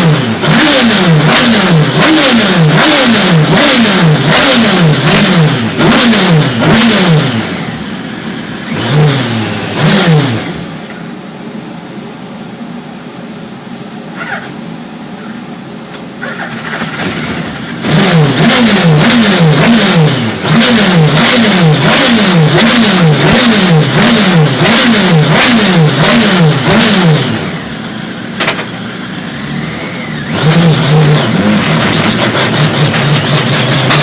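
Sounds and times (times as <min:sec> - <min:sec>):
race car engine revving: 0:00.0 - 0:10.9, 0:16.2 - 0:34.0
sharp engine misfire cracks: 0:14.1 - 0:14.6, 0:16.1 - 0:19.8.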